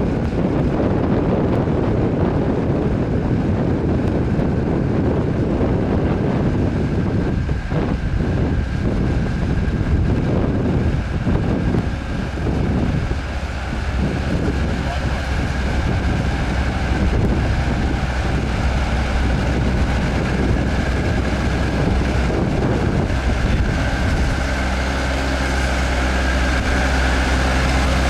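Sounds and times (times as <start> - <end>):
tractor engine running: 0.0 - 28.0
wind buffeting microphone: 0.0 - 28.0.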